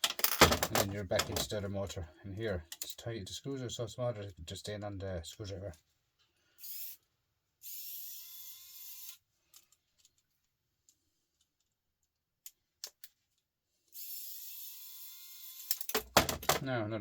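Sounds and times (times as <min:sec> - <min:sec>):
electric screwdriver whirring: 0:07.6 - 0:09.2, 0:13.9 - 0:15.9.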